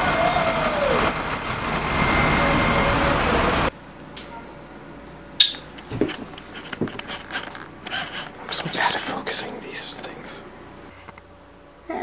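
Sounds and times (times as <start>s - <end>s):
brief squeal: 0.0s - 3.7s
street traffic noise: 0.0s - 3.8s.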